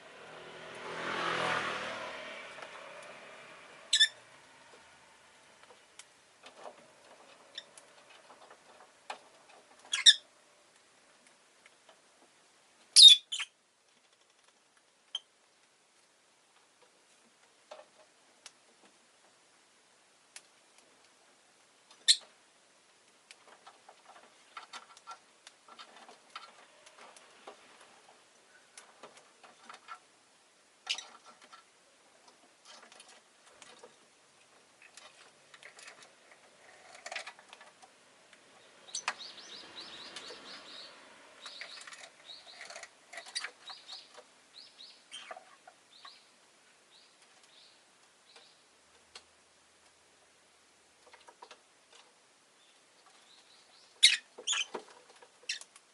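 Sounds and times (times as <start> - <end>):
lovebird chirping: 3.9 - 4.2, 9.9 - 10.3, 13.0 - 13.6, 22.0 - 22.3, 30.8 - 31.2, 38.6 - 48.6, 52.6 - 54.8, 55.5 - 55.7.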